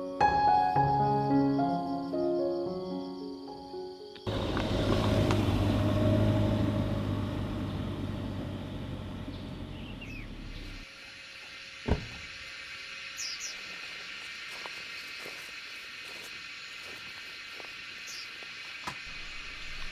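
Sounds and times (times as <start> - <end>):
bird chirps: 9.2 - 10.8.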